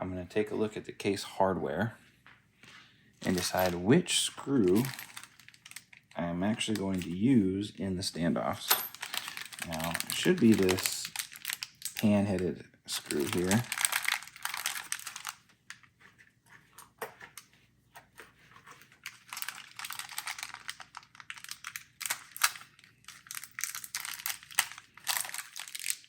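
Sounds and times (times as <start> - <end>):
plastic bag crinkling: 3.2 - 7.2, 8.7 - 16.2, 18.4 - 26.0.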